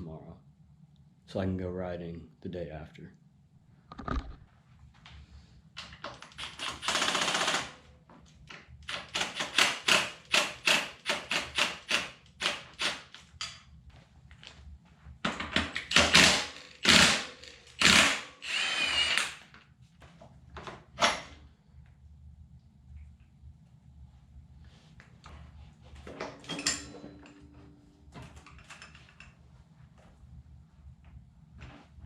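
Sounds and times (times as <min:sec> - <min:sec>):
power tool running: 0:15.9 - 0:19.4.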